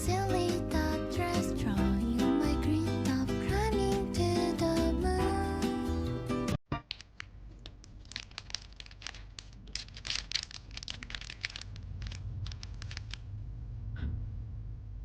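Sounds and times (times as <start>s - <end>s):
plastic packaging crinkling and tearing: 7.0s - 13.2s.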